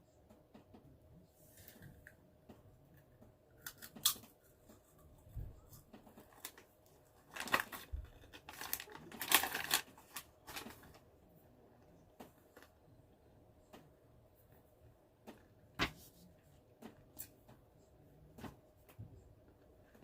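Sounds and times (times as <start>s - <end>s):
plastic snack bag crinkling: 6.1s - 11.0s.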